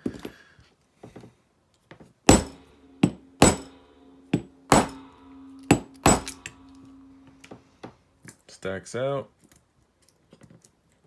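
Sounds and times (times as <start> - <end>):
sharp metallic knocks with ring: 2.3 - 7.2.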